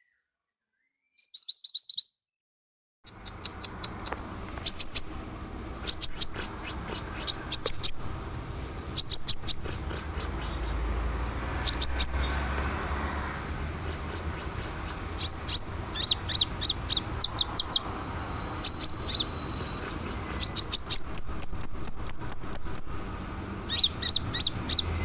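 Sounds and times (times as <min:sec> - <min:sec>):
bird calling high sharp notes: 0:03.1 - 0:08.2, 0:09.0 - 0:10.9, 0:13.8 - 0:17.8, 0:18.5 - 0:23.0.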